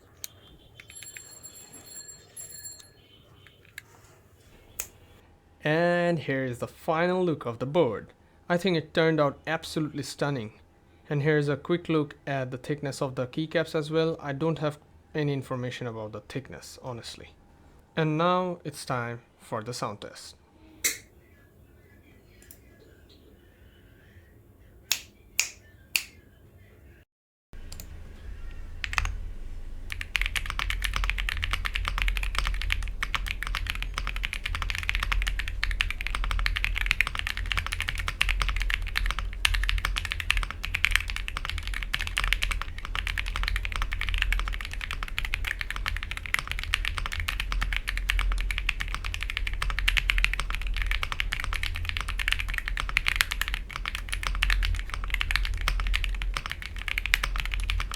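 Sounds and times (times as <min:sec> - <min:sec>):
mechanical keyboard typing: 0:28.8 - 0:29.2, 0:29.9 - 0:57.9.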